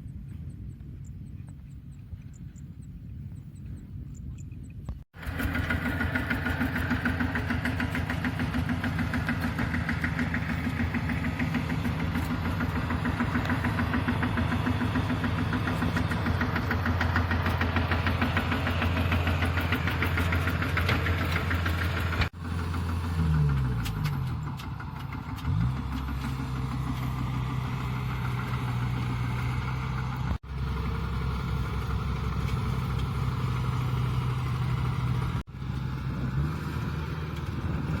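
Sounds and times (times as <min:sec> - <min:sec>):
combine harvester diesel engine: 0:05.1 - 0:38.0.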